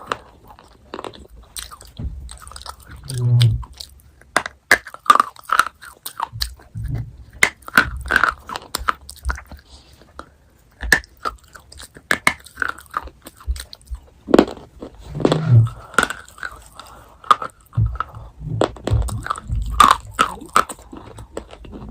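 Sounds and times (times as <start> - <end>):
chocolate crunching: 0.0 - 21.9
wet mouth sounds: 0.0 - 21.9.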